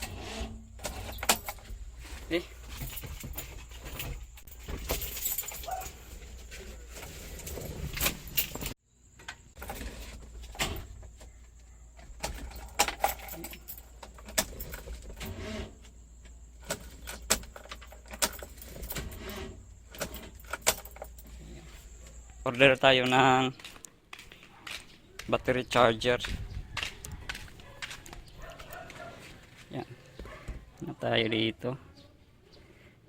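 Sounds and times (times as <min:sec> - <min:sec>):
objects clicking and rattling: 0:02.6 - 0:09.8, 0:12.0 - 0:15.4, 0:16.6 - 0:21.4.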